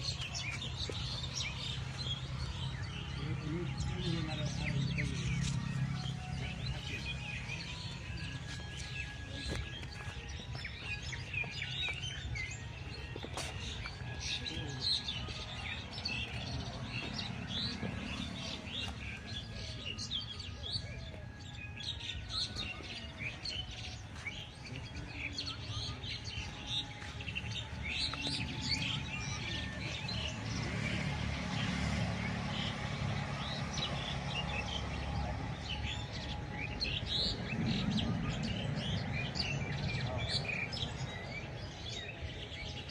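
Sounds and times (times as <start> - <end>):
many birds chirping: 0.0 - 42.9.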